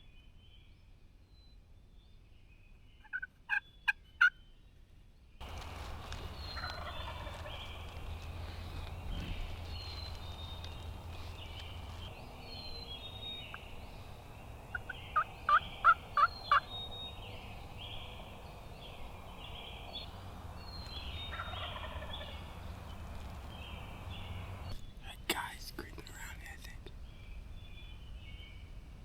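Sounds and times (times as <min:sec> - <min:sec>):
wild turkeys calling: 0:03.0 - 0:04.3, 0:05.4 - 0:24.8.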